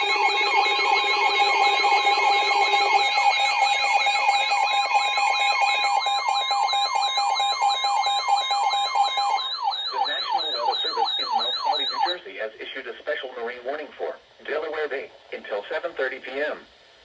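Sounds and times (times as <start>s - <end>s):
fast warble: 0.0s - 12.1s
falling siren sweeps: 0.0s - 12.2s
steady alert tones: 0.0s - 12.2s.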